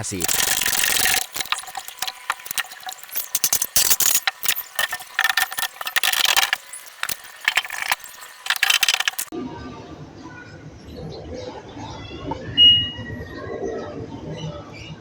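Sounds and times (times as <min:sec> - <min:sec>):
mechanical clicking and rattling: 0:00.0 - 0:09.3.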